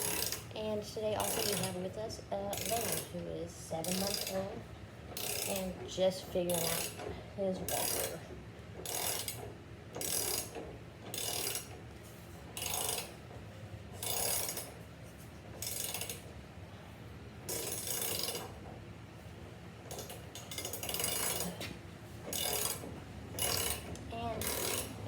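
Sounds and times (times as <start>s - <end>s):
mechanism ratcheting in bursts: 0.0s - 1.9s, 2.5s - 3.2s, 3.8s - 5.9s, 6.5s - 8.2s, 8.8s - 11.8s, 12.5s - 13.3s, 14.0s - 14.8s, 15.6s - 16.3s, 17.4s - 18.6s, 19.8s - 21.6s, 22.2s - 25.0s.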